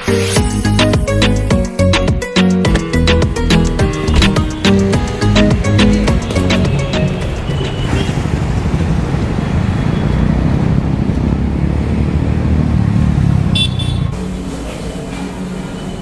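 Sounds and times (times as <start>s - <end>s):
vehicle rumbling: 2.8s - 16.0s
high horn toot: 13.5s - 14.2s.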